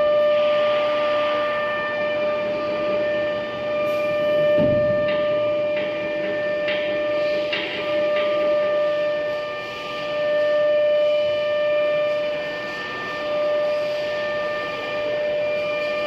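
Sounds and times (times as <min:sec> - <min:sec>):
spindle high whine: 0:00.0 - 0:16.0.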